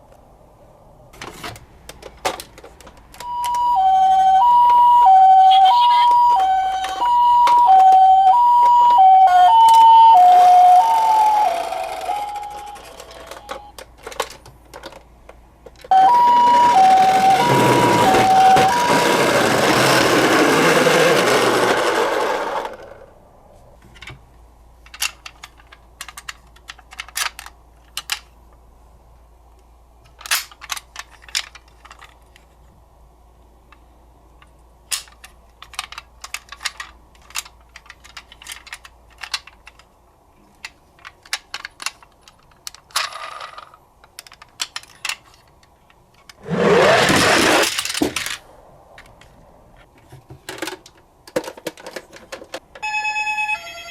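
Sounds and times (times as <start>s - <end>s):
toy cars clattering: 1.2s - 23.1s, 24.8s - 28.6s, 30.0s - 32.7s, 33.7s - 49.4s, 50.0s - 53.9s.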